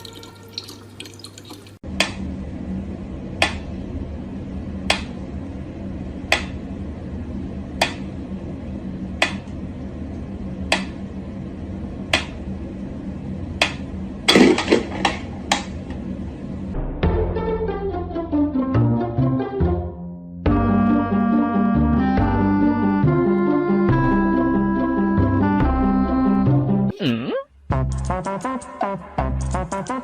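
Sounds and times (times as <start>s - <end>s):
steady low hum: 1.8s - 17.0s.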